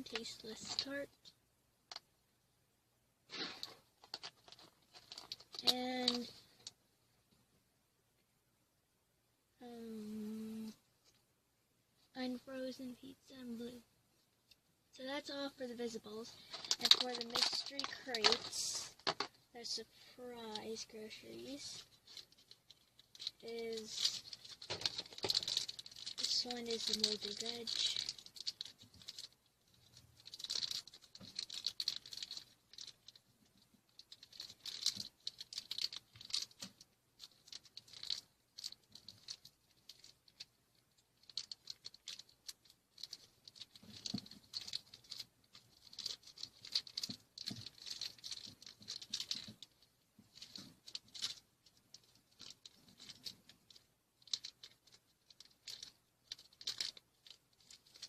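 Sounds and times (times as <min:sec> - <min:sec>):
plastic packaging crinkling: 0:00.0 - 0:01.0, 0:03.3 - 0:06.7, 0:15.8 - 0:19.7, 0:20.4 - 0:58.0.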